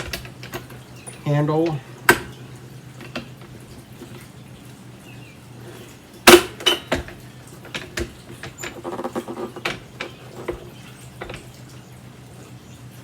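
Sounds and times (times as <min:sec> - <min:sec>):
sharp clicks and knocks: 0:00.0 - 0:02.4, 0:06.3 - 0:11.6.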